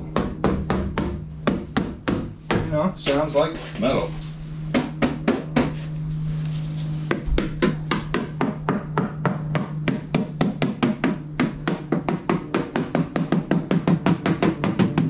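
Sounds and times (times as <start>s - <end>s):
rapid tapping on car panel: 4.7s - 5.8s, 7.1s - 15.0s.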